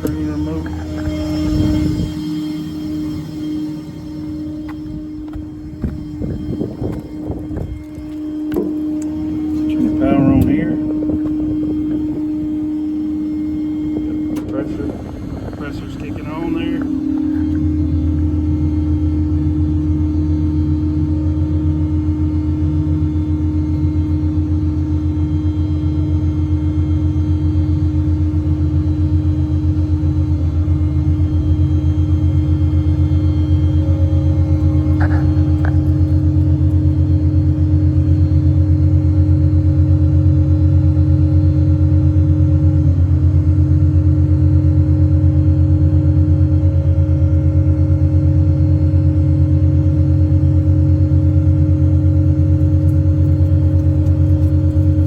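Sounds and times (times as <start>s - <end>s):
air compressor pulsing drone: 0.0s - 55.0s.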